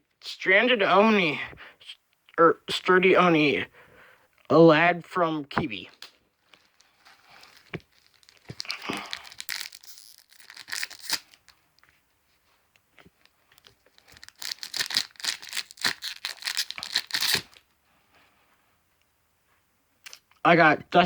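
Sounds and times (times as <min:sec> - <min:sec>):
foil wrapper tearing and crinkling: 0:06.5 - 0:11.5, 0:13.6 - 0:17.6.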